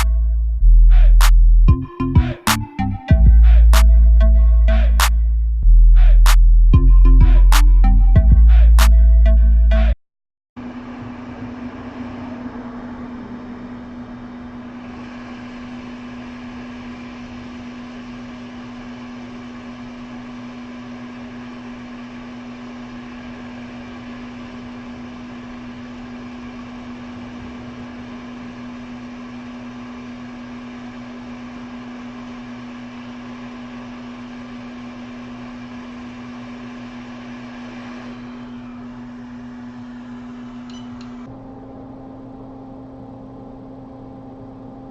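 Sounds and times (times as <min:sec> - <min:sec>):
low electrical hum: 0:38.2 - 0:44.9.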